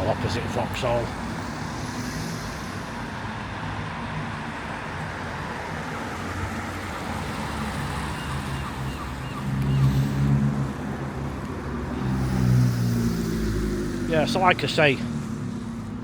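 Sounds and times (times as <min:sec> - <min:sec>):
road traffic passing: 0:00.0 - 0:16.0.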